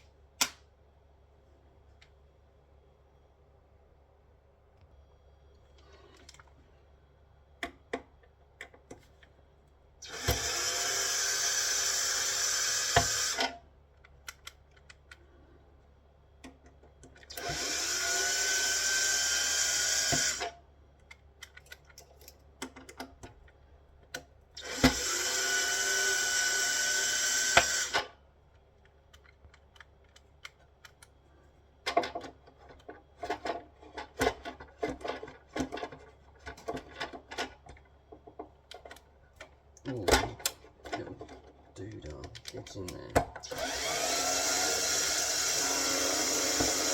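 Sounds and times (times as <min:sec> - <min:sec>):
cordless drill running: 0:10.0 - 0:13.6, 0:17.4 - 0:20.6, 0:24.6 - 0:28.1, 0:43.4 - 0:46.9.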